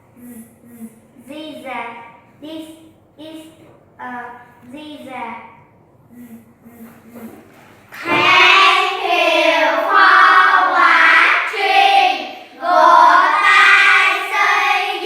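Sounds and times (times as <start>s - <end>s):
child singing: 8.0s - 15.0s.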